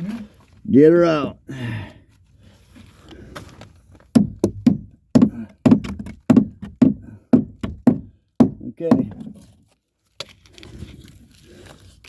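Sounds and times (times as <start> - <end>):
hammer striking wood: 4.1 - 9.3.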